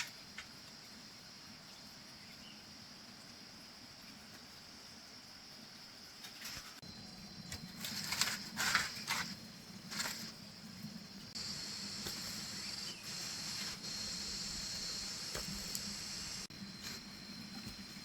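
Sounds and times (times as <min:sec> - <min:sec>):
water splashing and scraping: 0:07.6 - 0:10.4
steady high hiss: 0:09.9 - 0:17.1.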